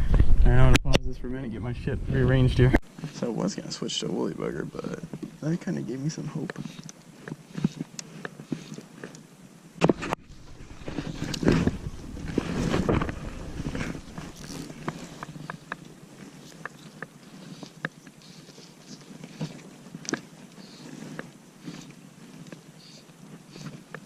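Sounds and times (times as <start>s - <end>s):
rustling and rummaging: 9.8s - 24.0s.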